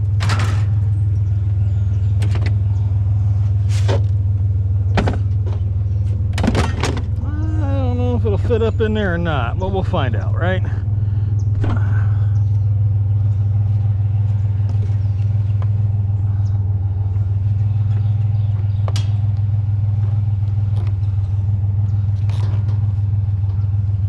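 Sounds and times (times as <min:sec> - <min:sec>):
vehicle engine droning: 0:00.0 - 0:24.0.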